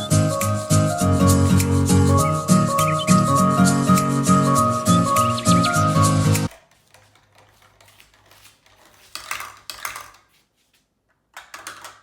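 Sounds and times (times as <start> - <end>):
marbles rolling in marble run: 8.6 - 10.3.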